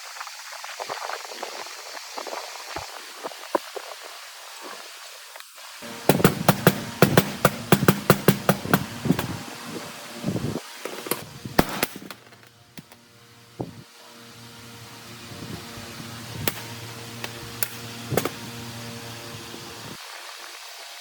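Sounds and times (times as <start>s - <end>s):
low steady hum: 5.8s - 20.0s
sharp knocks: 6.0s - 9.4s.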